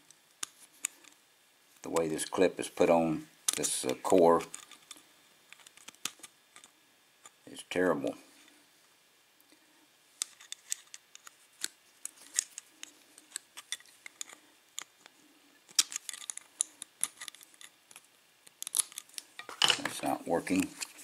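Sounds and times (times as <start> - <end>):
small metal clicks and scrapes: 3.5 - 7.4, 10.2 - 21.0.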